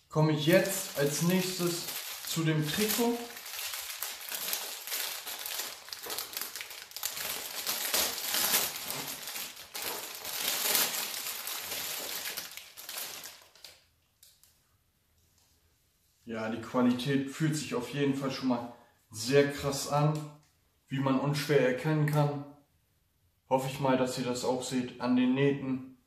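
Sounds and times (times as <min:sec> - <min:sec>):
plastic wrapping crinkling: 0:00.4 - 0:14.6.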